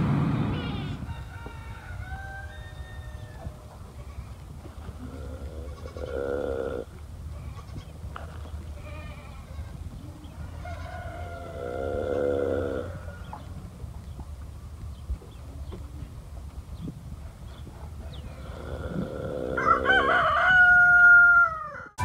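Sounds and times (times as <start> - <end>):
low steady rumble: 0.0 - 19.9
goat bleating: 5.2 - 7.9, 8.7 - 9.8.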